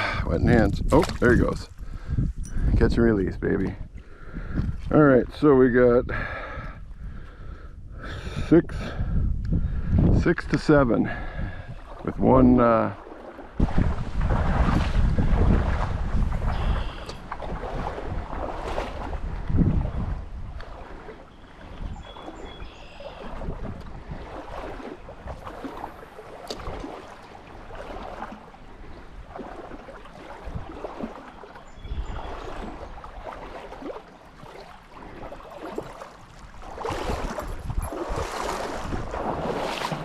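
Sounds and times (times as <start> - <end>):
stream water running: 0.0 - 7.4, 9.7 - 40.0
wind buffeting microphone: 0.0 - 40.0.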